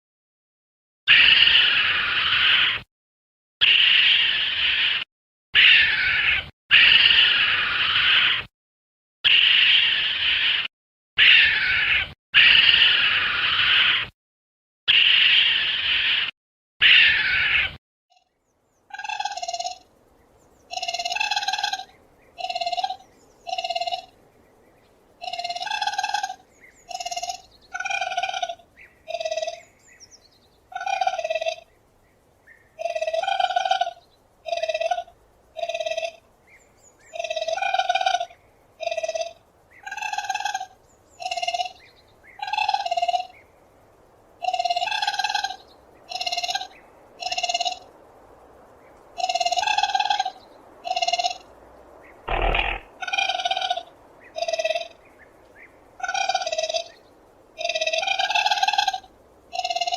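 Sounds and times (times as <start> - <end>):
raccoon chirring calls: 1.1 - 2.8, 3.6 - 5.0, 5.6 - 8.5, 9.3 - 14.1, 14.9 - 17.8, 18.9 - 19.9, 20.7 - 24.1, 25.2 - 29.7, 37.0 - 43.4, 52.3 - 55.0, 56.0 - 57.0
loud rasping burst: 52.3 - 52.8.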